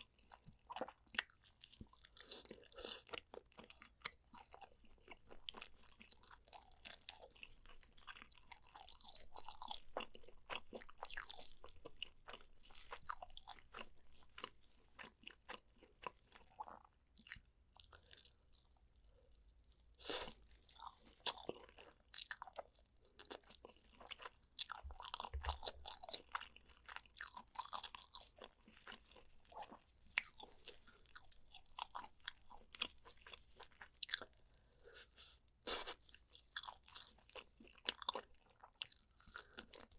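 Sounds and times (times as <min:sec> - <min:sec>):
chewing and biting: 0:00.2 - 0:18.8, 0:20.0 - 0:39.9.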